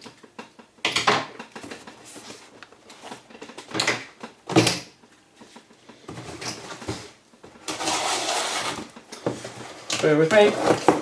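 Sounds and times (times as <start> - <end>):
packaging scraping and rustling: 6.2 - 11.0.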